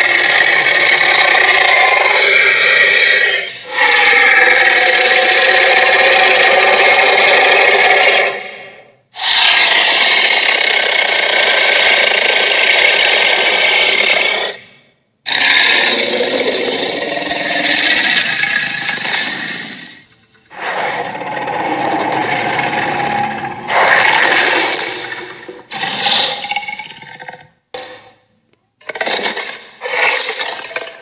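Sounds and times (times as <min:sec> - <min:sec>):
harsh rattling sound effect: 0:28.8 - 0:31.0.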